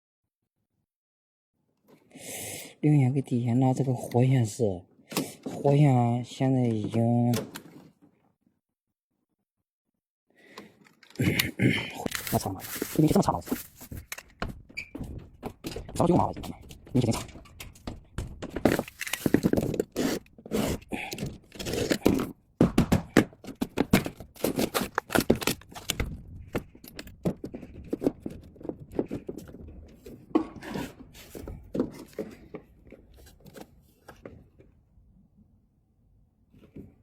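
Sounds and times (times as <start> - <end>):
electrical wire being handled: 12.1 - 22.4, 23.1 - 34.3.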